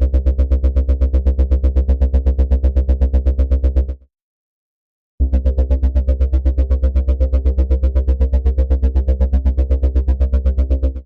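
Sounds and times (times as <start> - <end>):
pulsating synth bass: 5.2 - 11.0.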